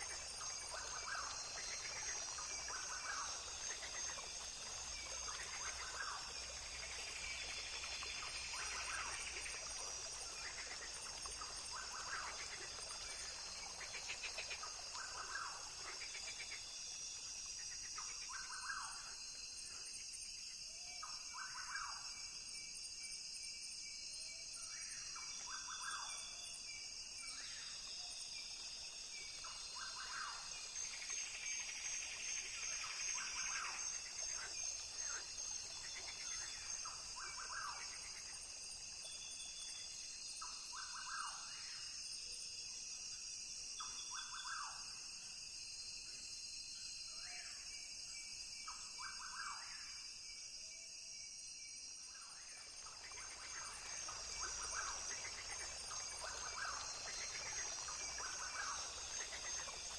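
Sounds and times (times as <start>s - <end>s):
insects chorus: 0.0s - 59.9s.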